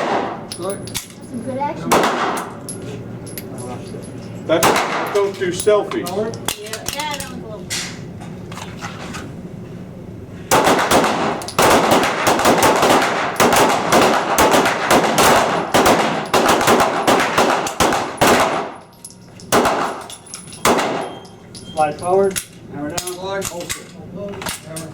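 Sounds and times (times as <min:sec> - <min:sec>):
pistol shots: 0:00.0 - 0:00.5, 0:01.9 - 0:02.5, 0:04.5 - 0:05.2, 0:10.5 - 0:18.8, 0:19.5 - 0:21.2.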